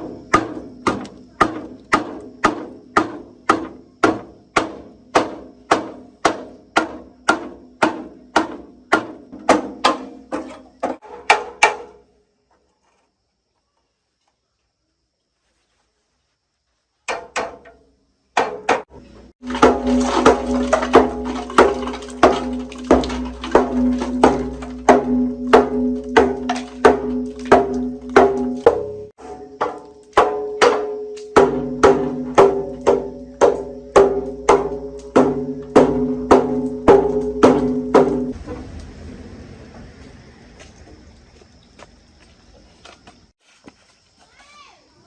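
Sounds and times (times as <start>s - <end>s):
music with percussive beat: 23.0s - 38.4s.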